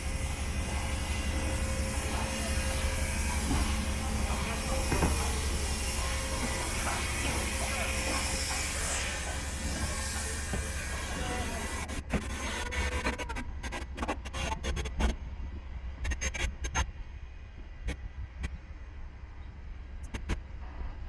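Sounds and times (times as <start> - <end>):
steam hissing: 0.0 - 12.4.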